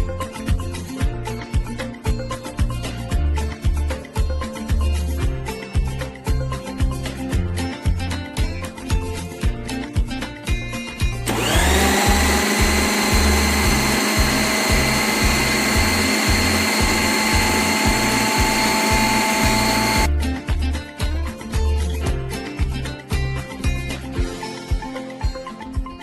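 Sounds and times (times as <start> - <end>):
background music with beat: 0.0 - 26.0
blender motor whirring: 11.3 - 20.1.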